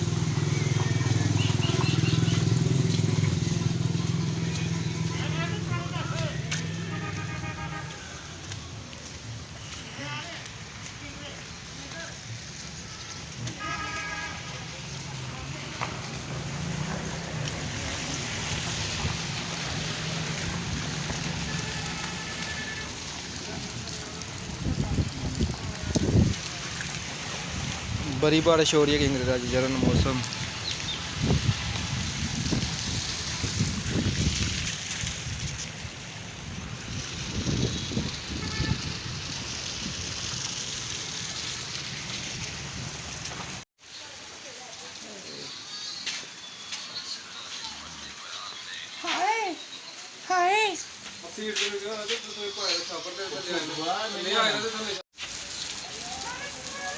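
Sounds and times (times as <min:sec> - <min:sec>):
heavy rain: 0:00.0 - 0:56.9
wind buffeting microphone: 0:24.4 - 0:26.5, 0:31.0 - 0:40.2.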